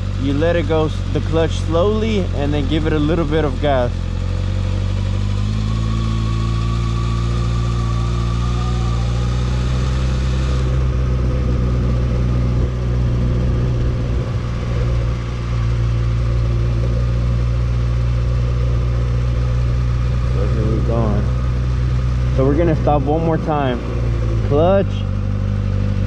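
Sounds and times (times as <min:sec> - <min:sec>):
motorcycle engine at low revs: 0:00.0 - 0:26.0.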